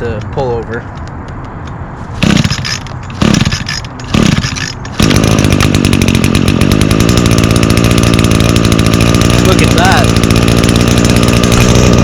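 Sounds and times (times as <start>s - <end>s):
recoil starter pulls: 2.2s - 12.0s
string trimmer engine running: 2.2s - 12.0s.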